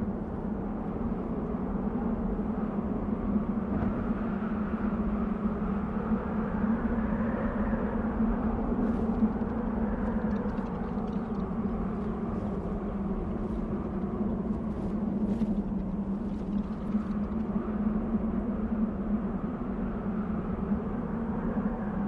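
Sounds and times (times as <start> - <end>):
wind blowing: 7.6 - 19.8
faint ticks: 8.9 - 17.5.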